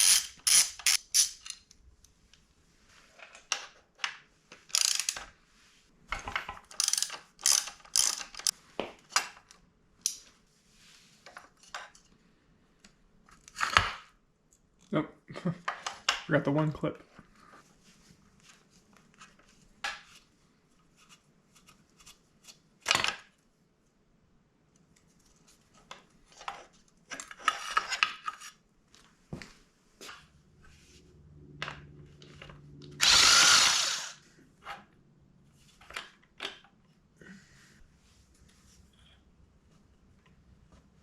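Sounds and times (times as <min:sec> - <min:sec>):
power tool running: 0:33.0 - 0:34.2.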